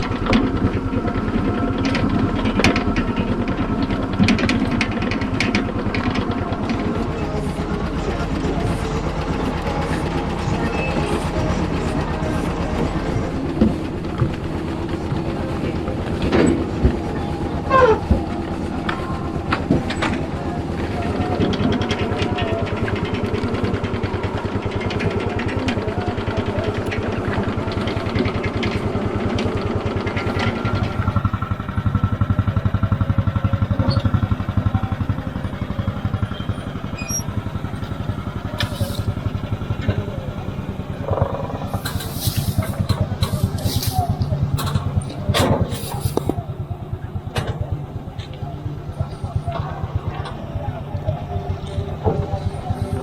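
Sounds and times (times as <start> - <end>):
farm machinery engine running: 0.0 - 53.0
rhythmic mechanical clattering: 0.0 - 53.0
brief squeak: 36.3 - 37.3.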